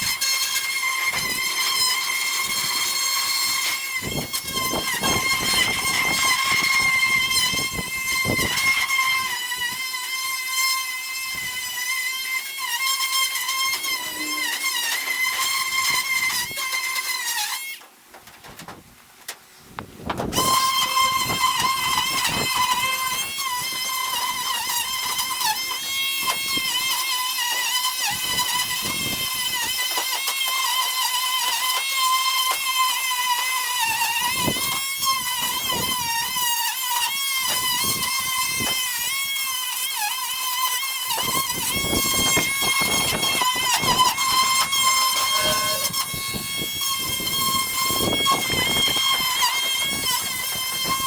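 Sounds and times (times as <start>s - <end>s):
small electric motor whining: 0.0s - 17.8s, 20.3s - 51.0s
rough scraping noise: 13.4s - 16.5s, 41.4s - 51.0s.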